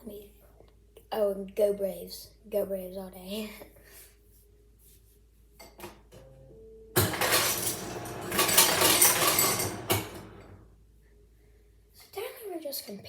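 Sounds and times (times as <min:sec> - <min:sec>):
cups and cans clinking: 0:07.0 - 0:10.6.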